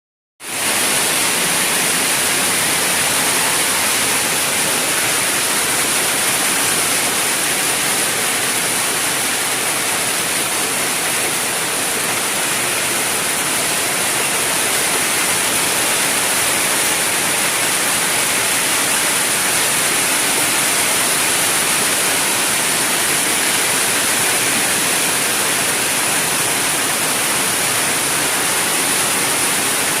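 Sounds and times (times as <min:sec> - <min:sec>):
steady rain hiss: 0:00.5 - 0:30.0.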